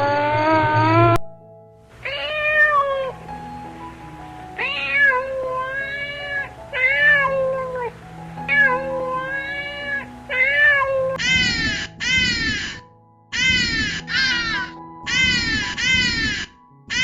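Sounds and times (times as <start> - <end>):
soft background music: 0.0 - 17.0
cat meowing: 2.0 - 3.2, 4.6 - 12.8, 13.4 - 17.0.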